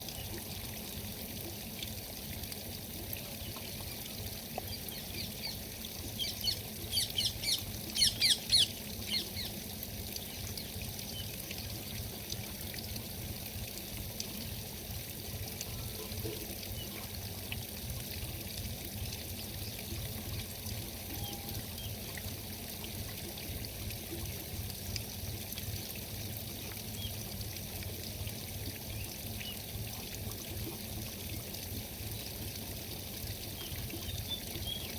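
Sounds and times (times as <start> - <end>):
steady rushing water: 0.0 - 34.9.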